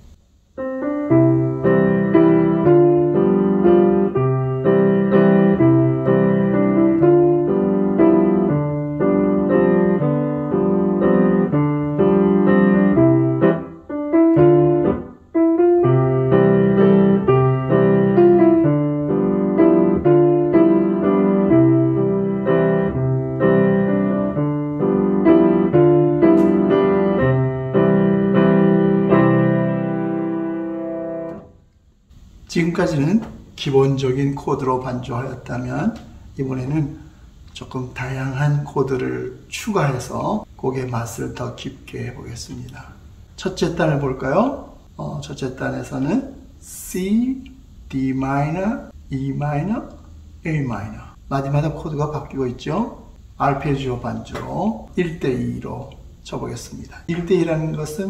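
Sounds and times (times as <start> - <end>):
piano chordal accompaniment: 0.6 - 31.6.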